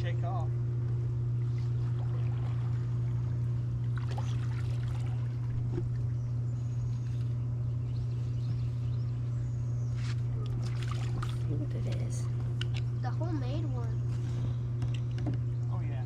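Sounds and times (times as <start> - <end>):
steady low hum: 0.0 - 16.0
water trickling and splashing: 1.4 - 6.1, 10.4 - 12.2.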